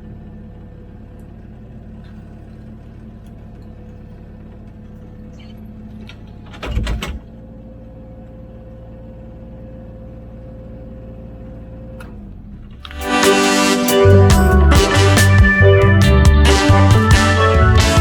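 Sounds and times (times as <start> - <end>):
diesel engine running: 14.0 - 18.0.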